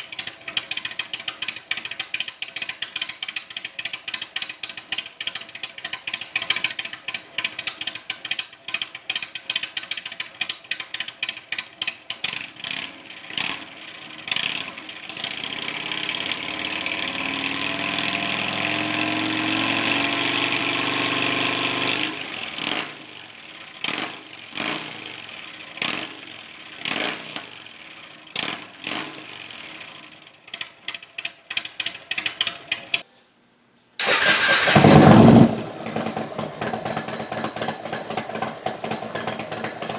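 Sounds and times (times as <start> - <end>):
ratchet clicking: 0.0 - 13.6, 30.4 - 33.0
power tool whirring: 34.0 - 35.6.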